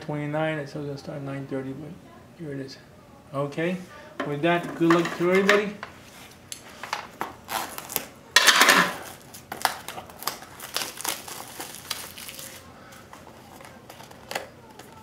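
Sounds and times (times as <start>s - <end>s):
plastic packaging crinkling: 7.2s - 15.0s.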